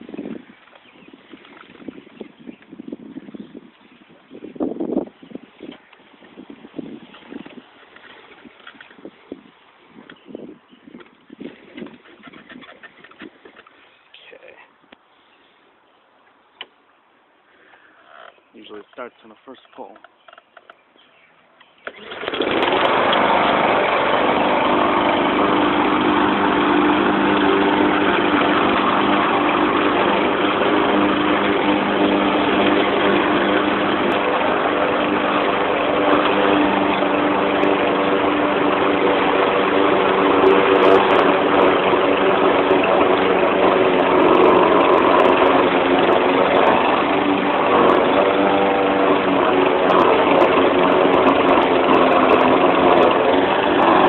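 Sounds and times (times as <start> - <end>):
lawn mower engine running: 21.8 - 54.0.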